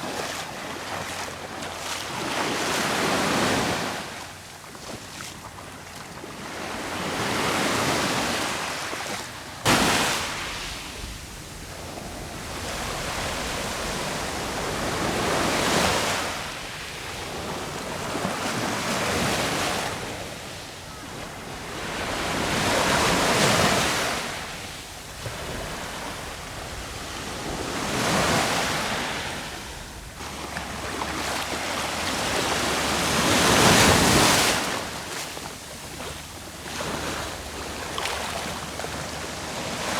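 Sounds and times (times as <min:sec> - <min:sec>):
waves breaking on shore: 0:00.0 - 0:04.2, 0:06.0 - 0:39.9.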